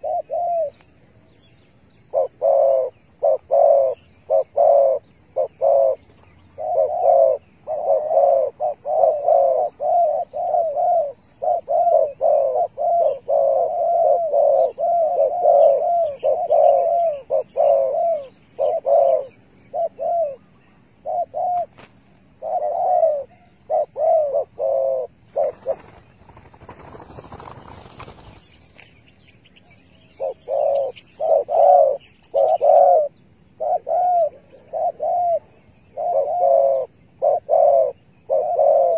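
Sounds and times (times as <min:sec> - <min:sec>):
dove cooing: 0:00.0 - 0:00.9, 0:02.0 - 0:28.5, 0:29.6 - 0:38.9.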